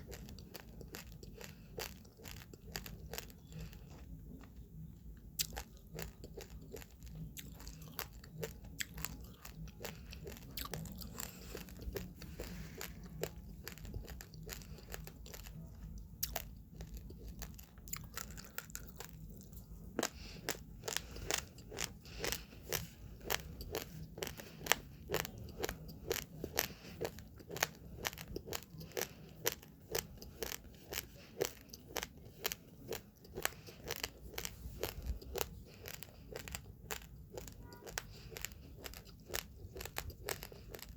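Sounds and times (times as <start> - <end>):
rice grains crunched between teeth: 16.2 - 40.9.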